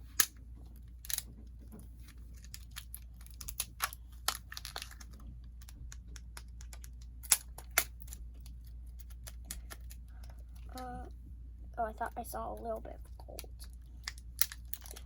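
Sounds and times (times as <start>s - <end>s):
plastic wrapping crinkling: 0.8s - 10.7s, 13.1s - 15.0s.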